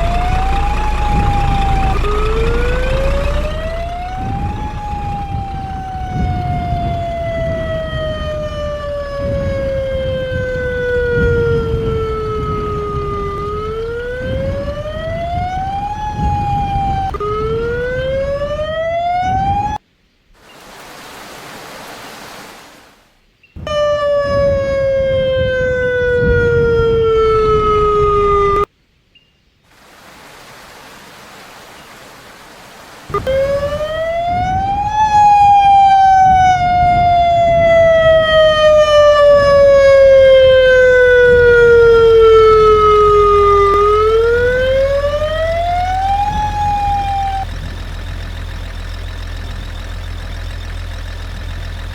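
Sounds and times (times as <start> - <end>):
low rumble: 0.0 - 18.6, 33.2 - 51.9
warning siren wailing: 0.0 - 19.8, 23.6 - 28.7, 33.1 - 51.9.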